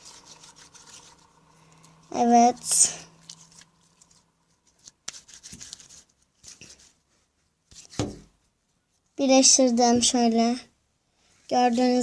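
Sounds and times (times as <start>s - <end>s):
slime kneaded by hand: 0.0s - 7.0s.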